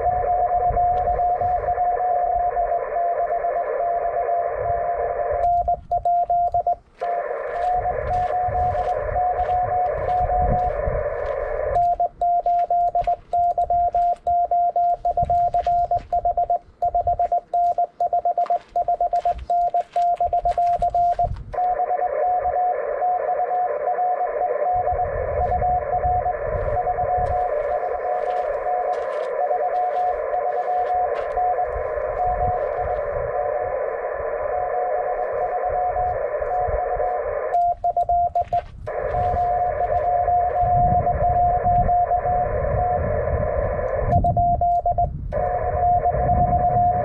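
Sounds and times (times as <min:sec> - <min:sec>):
radio band hiss: 0:00.0 - 0:05.4, 0:06.9 - 0:13.1, 0:18.5 - 0:37.6, 0:38.9 - 0:44.2
morse code tone: 0:00.0 - 0:47.0
sharp clicks: 0:43.8 - 0:45.6.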